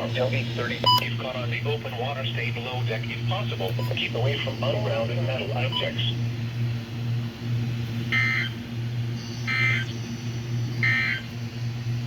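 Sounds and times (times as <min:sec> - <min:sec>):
low electrical hum: 0:00.0 - 0:12.0
digital data squawks: 0:08.1 - 0:08.6, 0:09.2 - 0:10.1, 0:10.8 - 0:11.3.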